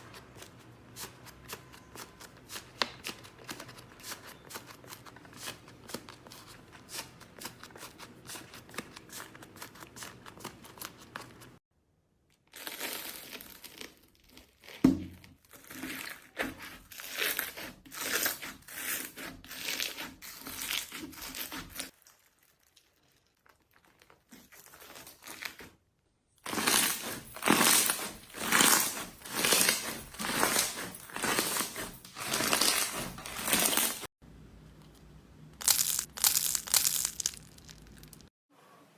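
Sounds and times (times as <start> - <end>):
slime crackling when squeezed: 35.6 - 38.3.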